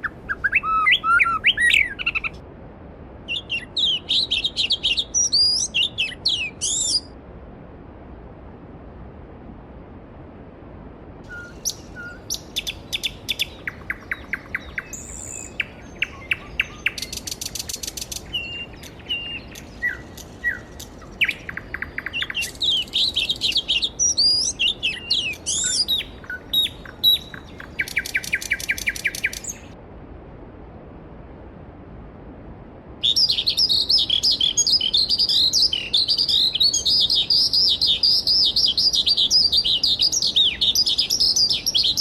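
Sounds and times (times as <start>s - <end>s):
songbirds singing: 0.0s - 2.4s, 3.3s - 7.1s, 11.3s - 29.8s, 33.0s - 42.0s.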